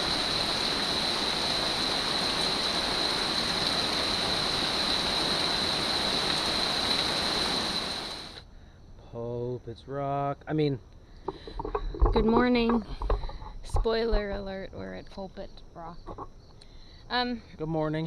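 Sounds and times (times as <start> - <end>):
heavy rain falling: 0.0 - 8.4.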